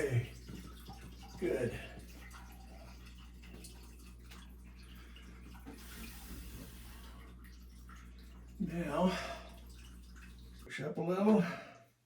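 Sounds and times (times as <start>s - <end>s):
shower water hiss: 5.7s - 7.2s.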